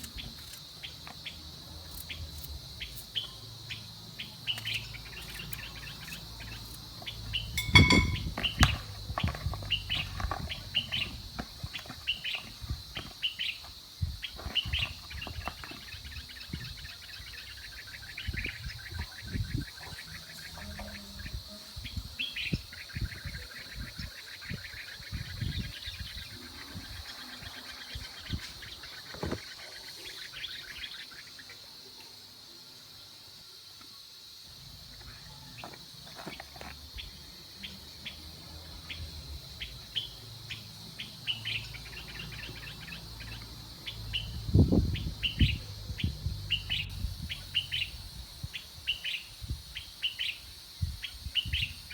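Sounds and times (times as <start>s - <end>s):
small birds chirping and trilling: 0.0s - 33.4s, 34.2s - 51.9s
loud ringing clink: 7.6s - 8.4s
kitchen knocks and clatter: 7.6s - 8.8s.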